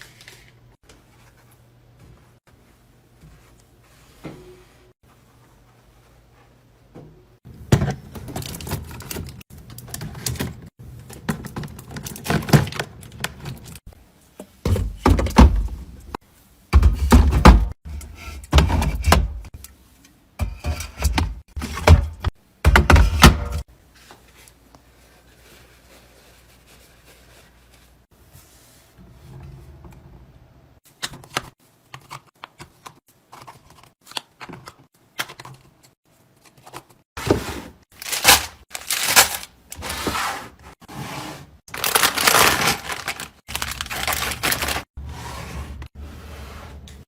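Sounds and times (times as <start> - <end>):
containers thunking and clattering: 14.6 - 15.8.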